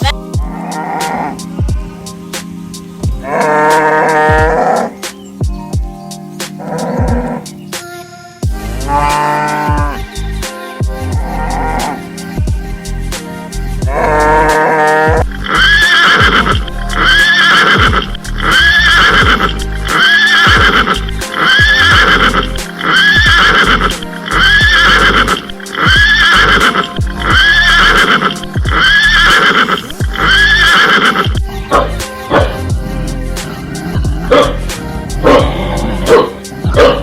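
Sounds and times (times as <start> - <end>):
background music with steady beat: 0.0 - 37.0
horse whinny: 3.2 - 4.9, 6.6 - 7.5, 14.0 - 32.6.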